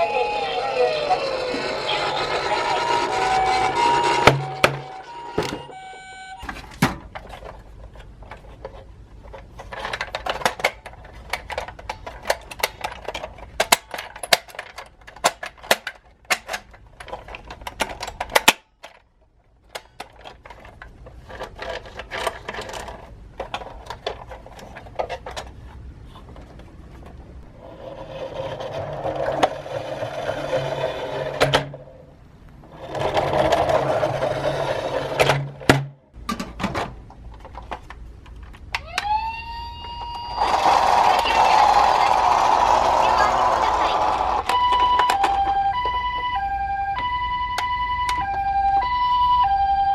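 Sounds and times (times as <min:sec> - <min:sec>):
toy cars clattering: 0:00.0 - 0:05.8, 0:06.4 - 0:32.0, 0:32.7 - 0:39.0, 0:40.3 - 0:46.3
whirring rattle: 0:40.4 - 0:44.4.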